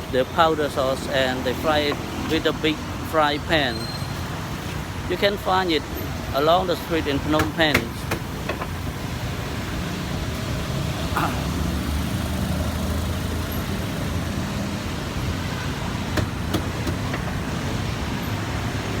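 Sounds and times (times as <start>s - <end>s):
traffic engine rumble: 0.0s - 19.0s.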